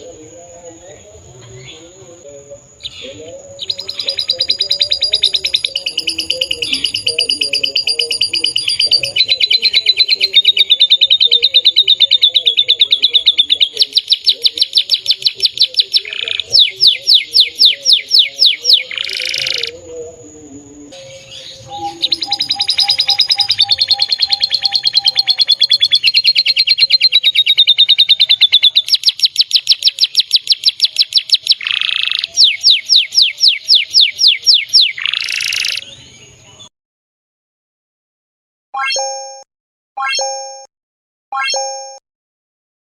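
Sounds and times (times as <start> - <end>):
canary singing trills: 0.0 - 36.7.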